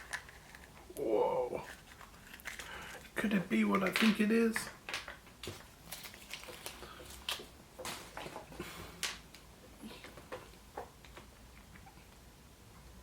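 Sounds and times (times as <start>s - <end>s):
wrapping crinkling: 0.0s - 10.2s.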